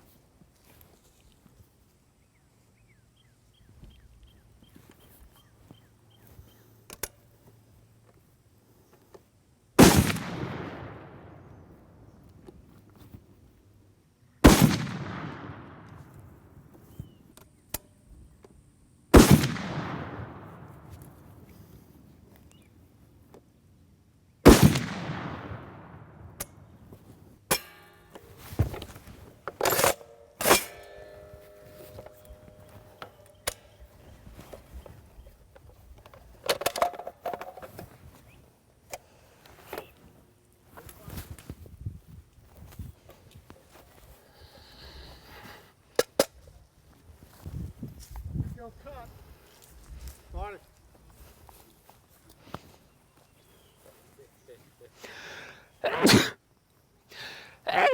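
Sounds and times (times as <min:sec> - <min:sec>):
rifle shot with echoing rumble: 0:09.8 - 0:12.2, 0:14.4 - 0:16.6, 0:19.1 - 0:21.4, 0:24.4 - 0:26.7
metallic clanks and clicks: 0:27.5 - 0:33.8.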